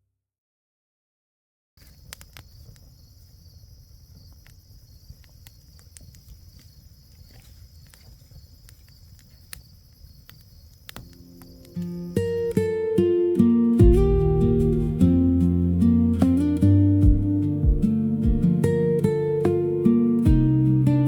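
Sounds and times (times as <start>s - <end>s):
campfire crackling and popping: 1.8s - 13.2s
crickets chirping: 1.8s - 21.0s.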